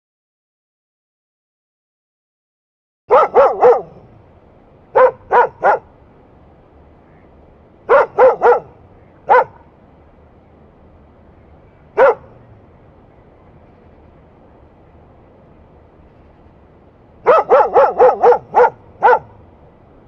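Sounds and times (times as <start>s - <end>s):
dog barking: 3.1s - 4.1s, 5.0s - 5.9s, 7.9s - 9.6s, 12.0s - 12.4s, 17.2s - 19.4s.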